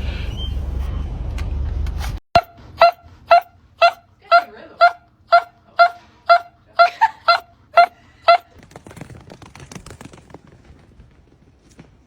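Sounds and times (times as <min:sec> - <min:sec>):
dog whining in high yips: 0:02.4 - 0:06.5.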